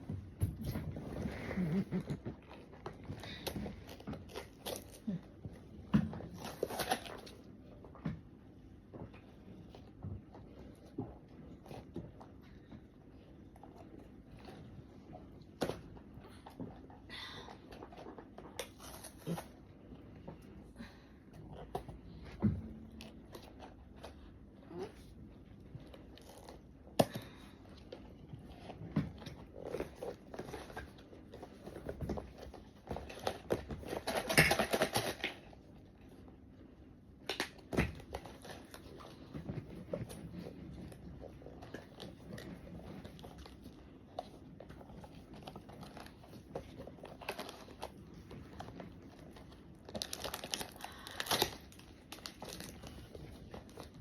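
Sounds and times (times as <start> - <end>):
packaging crinkling and tearing: 43.0 - 54.0.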